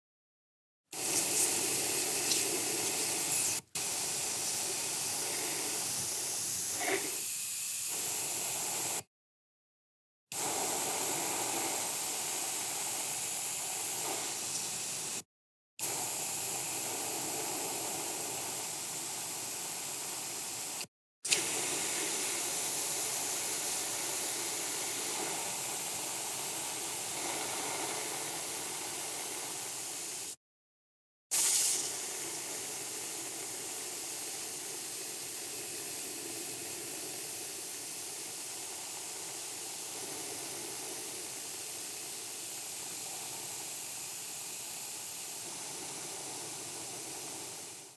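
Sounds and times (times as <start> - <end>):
aerosol spray can hissing: 0.9 - 9.1, 10.4 - 30.4, 31.3 - 47.9.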